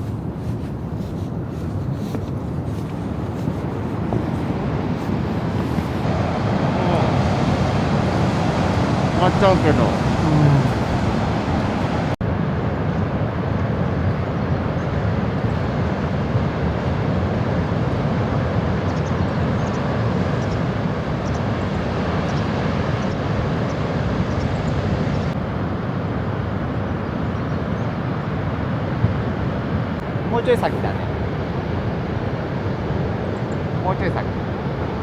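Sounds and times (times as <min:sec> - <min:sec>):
car road and engine noise: 0:00.0 - 0:12.2.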